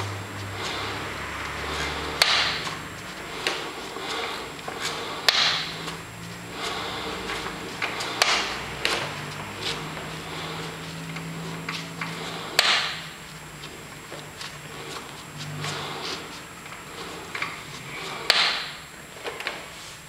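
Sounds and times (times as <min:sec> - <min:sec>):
low hum: 0:00.0 - 0:19.6
brake drum knocking: 0:02.2 - 0:03.6.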